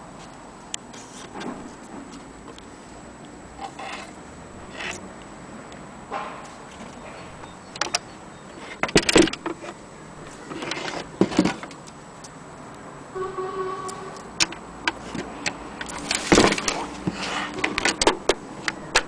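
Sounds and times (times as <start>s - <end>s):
typewriter mechanism clacking: 15.4s - 19.0s.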